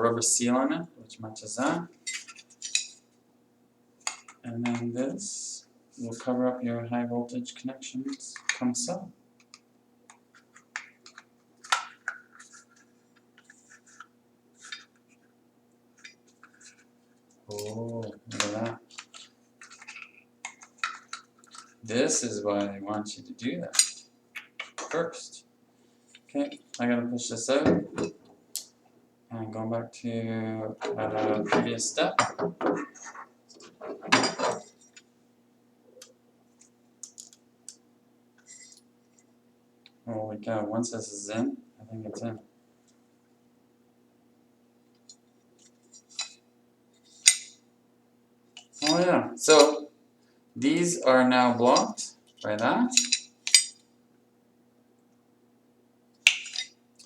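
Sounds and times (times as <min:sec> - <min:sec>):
faint steady hum: 0:00.0 - 0:57.0
plastic parts clicking and scraping: 0:17.5 - 0:21.8.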